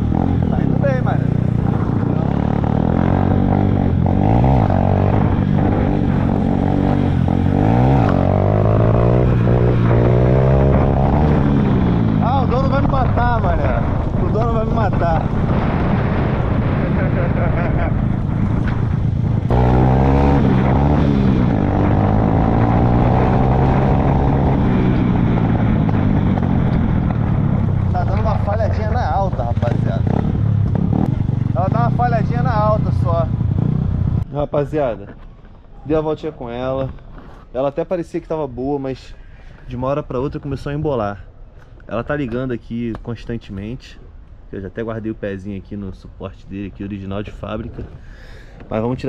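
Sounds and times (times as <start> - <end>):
motorcycle engine running: 0.0 - 34.2
wind rushing: 0.0 - 34.2.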